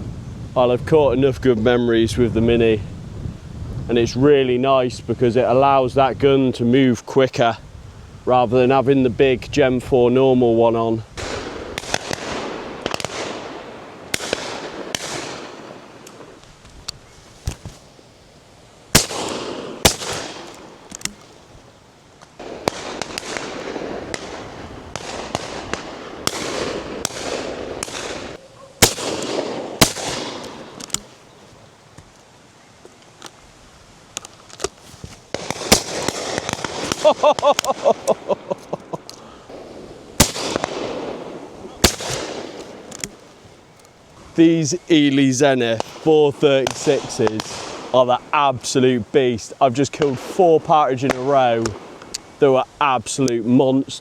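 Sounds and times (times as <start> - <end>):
loud close shotgun shots: 11.2 - 16.3, 18.9 - 21.3, 22.4 - 31.2, 35.3 - 38.5, 39.5 - 43.4, 45.7 - 48.0, 49.9 - 52.1
distant shotgun shots echoing: 11.2 - 16.4, 18.9 - 21.3, 22.4 - 31.2, 35.3 - 38.5, 39.5 - 43.4, 45.8 - 48.0.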